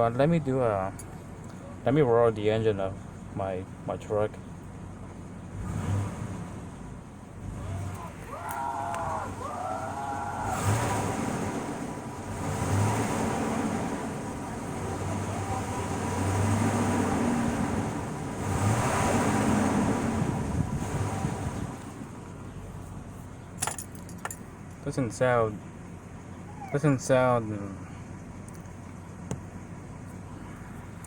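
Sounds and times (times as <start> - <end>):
car engine revving: 5.4 - 22.8
dog whining: 26.4 - 26.8.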